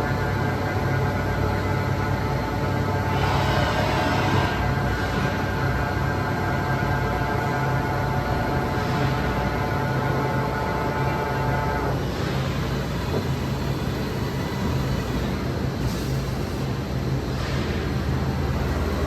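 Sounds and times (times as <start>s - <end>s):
machine whine: 0.0s - 19.0s
machining center hum: 0.0s - 19.0s.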